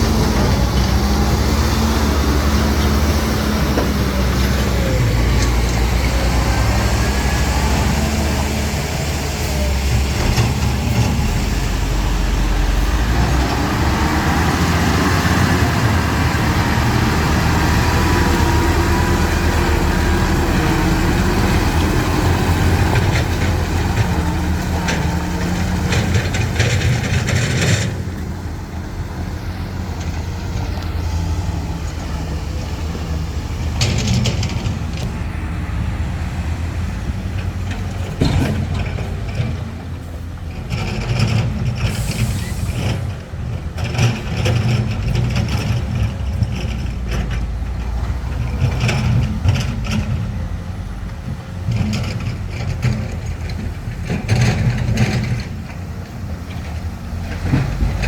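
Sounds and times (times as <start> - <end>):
heavy diesel machinery running: 0.0 - 58.0
metallic clanks and knocks: 37.3 - 39.9
brief hiss: 42.0 - 42.8.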